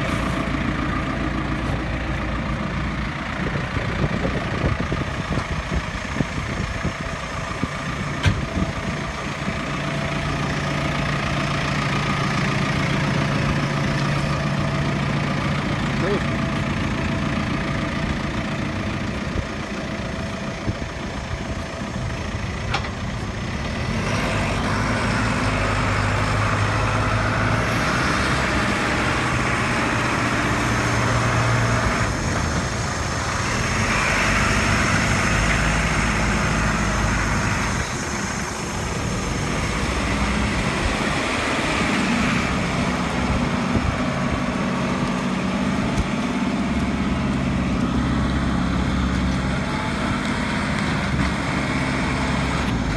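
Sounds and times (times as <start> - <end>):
diesel engine running with hiss: 0.0 - 52.9.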